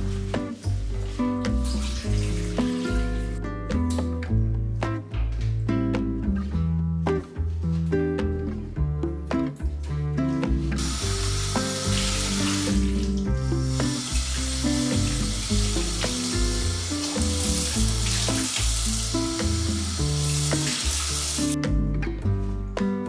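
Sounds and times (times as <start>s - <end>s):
water running from a tap: 0.0s - 3.4s, 10.8s - 21.6s
soft background music: 0.0s - 23.0s.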